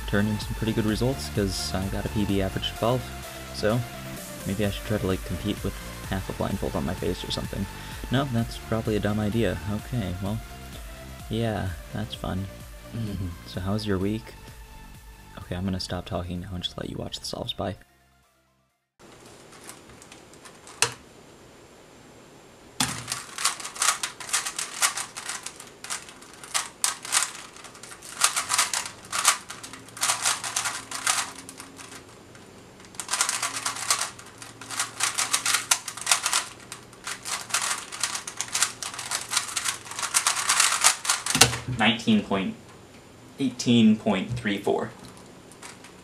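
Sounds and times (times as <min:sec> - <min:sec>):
plastic puzzle cube clicking: 0:22.8 - 0:32.2, 0:32.8 - 0:41.6, 0:45.0 - 0:46.0.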